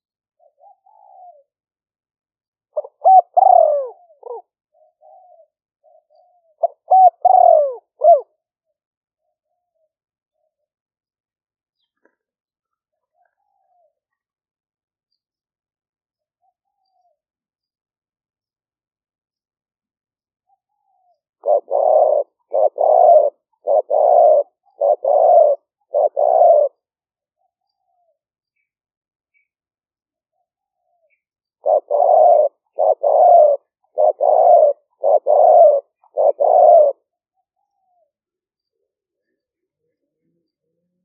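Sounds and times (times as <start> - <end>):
dove cooing: 0.0 - 1.7, 2.7 - 8.4, 13.0 - 14.1, 20.5 - 28.2, 30.3 - 38.1.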